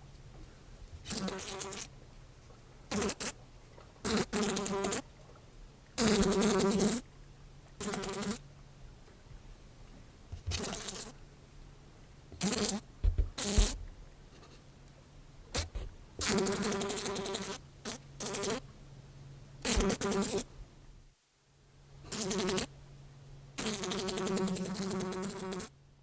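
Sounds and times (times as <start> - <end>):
fly buzzing: 1.1 - 1.9, 10.4 - 11.1, 12.4 - 12.8, 13.4 - 13.8, 19.7 - 20.4.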